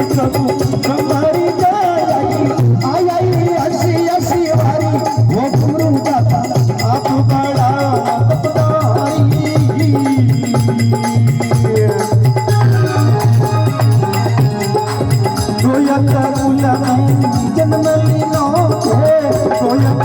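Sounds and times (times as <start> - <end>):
steady percussion beat: 0.0 - 20.0.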